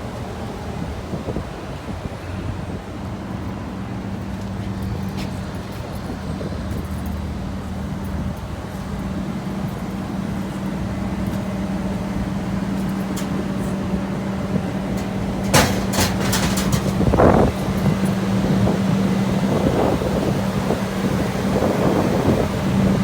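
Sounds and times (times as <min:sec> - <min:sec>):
wind rumble on microphone: 0:00.0 - 0:04.3, 0:04.9 - 0:23.0
low machine hum: 0:07.2 - 0:23.0.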